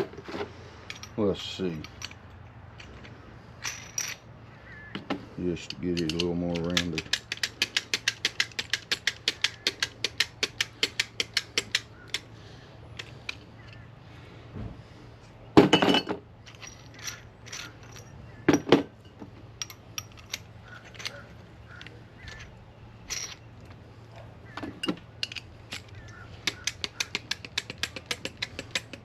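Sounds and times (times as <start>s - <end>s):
ratcheting hand tool clicking: 5.6s - 12.3s, 24.8s - 29.0s.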